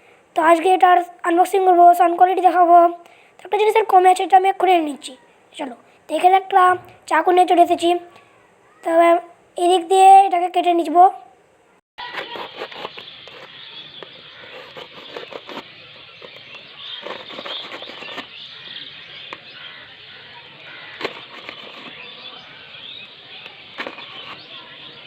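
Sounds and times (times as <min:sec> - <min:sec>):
packaging crackling and rustling: 0:20.7 - 0:22.2.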